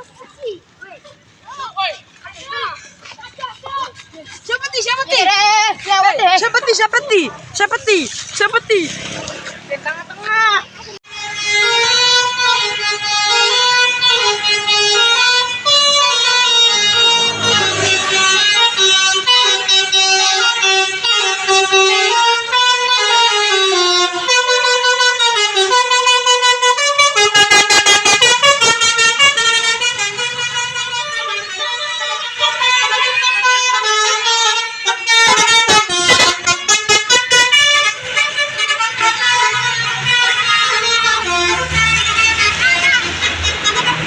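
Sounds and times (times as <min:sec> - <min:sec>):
multi-tone musical air horn: 0:11.1 - 0:44.0.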